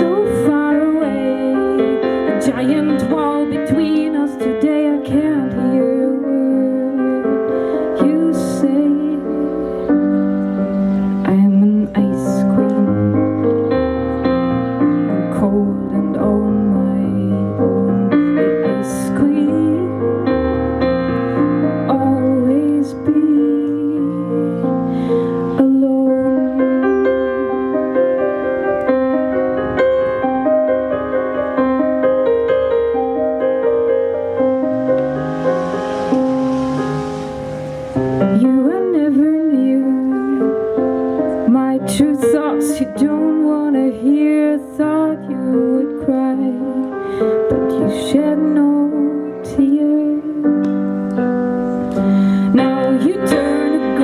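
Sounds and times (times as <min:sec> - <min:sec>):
woman singing: 0:00.0 - 0:10.2, 0:11.1 - 0:13.4, 0:15.0 - 0:20.5, 0:21.8 - 0:27.4, 0:38.2 - 0:50.6, 0:52.2 - 0:54.0
piano ballad: 0:00.0 - 0:54.0.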